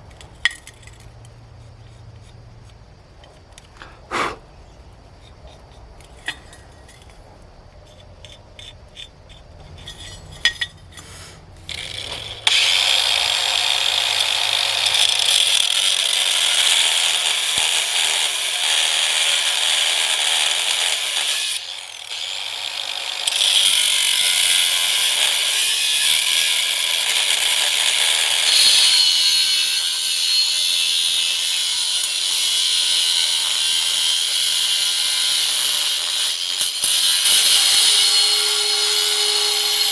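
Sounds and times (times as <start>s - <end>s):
power tool whirring on steel: 11.7s - 39.9s.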